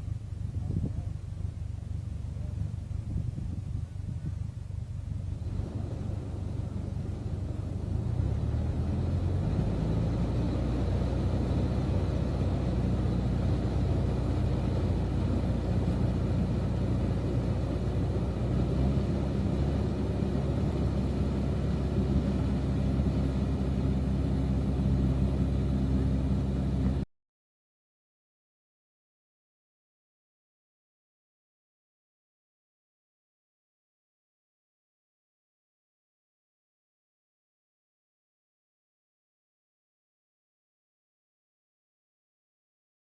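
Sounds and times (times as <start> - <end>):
threshing machine engine humming: 0.0 - 27.0.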